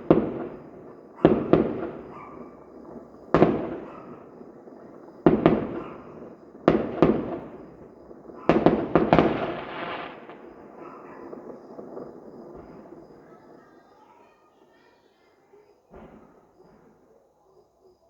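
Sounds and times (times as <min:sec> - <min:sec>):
fireworks bangs with echo: 0:00.0 - 0:14.3, 0:15.8 - 0:17.0.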